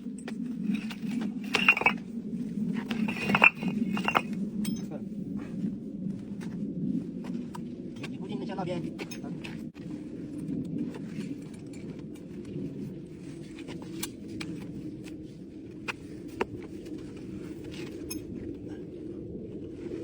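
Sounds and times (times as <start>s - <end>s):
steady low rumble: 0.0s - 20.0s
bricks clinking and knocking: 0.2s - 2.1s, 2.7s - 4.9s.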